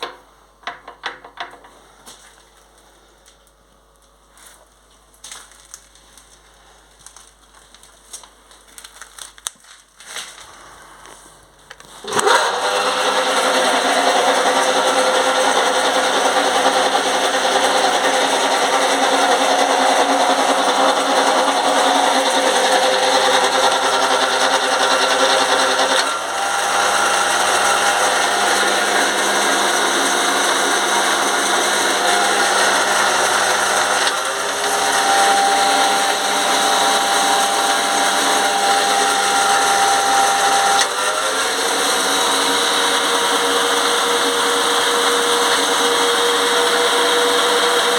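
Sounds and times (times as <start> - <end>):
lathe motor whining: 12.0 - 47.9.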